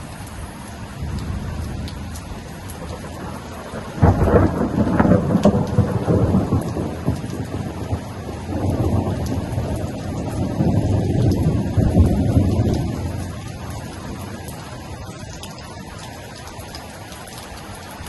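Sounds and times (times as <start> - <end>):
steady rain: 0.0 - 18.0
rolling thunder: 1.0 - 15.1
loud thunderclap: 2.8 - 13.2.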